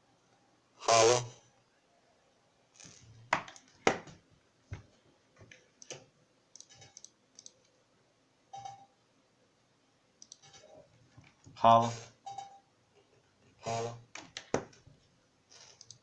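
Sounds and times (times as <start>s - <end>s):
sharp audio clicks and crackles: 5.4s - 7.7s, 15.6s - 16.0s.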